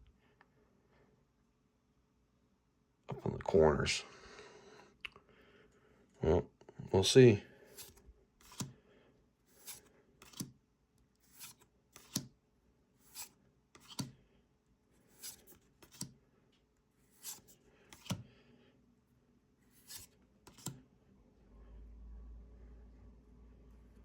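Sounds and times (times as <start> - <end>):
cards snapping while flicked through: 7.8 - 8.7, 9.6 - 10.5, 11.2 - 12.3, 13.1 - 14.2, 15.2 - 16.1, 17.2 - 18.2, 19.8 - 20.8.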